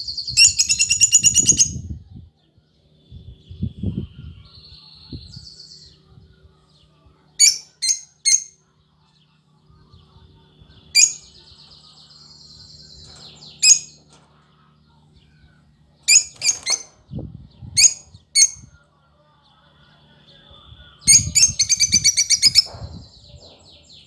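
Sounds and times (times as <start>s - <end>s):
lovebird chirping: 7.4s - 8.6s, 10.8s - 11.4s, 13.4s - 14.0s, 16.1s - 16.9s, 21.1s - 24.0s.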